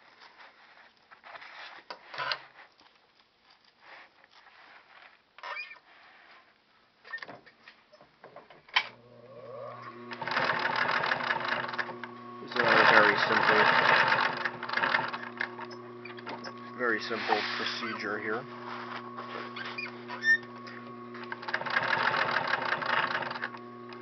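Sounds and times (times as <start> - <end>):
fabric and velcro rustling: 0.0 - 6.6
sewing machine stitching: 9.2 - 24.0.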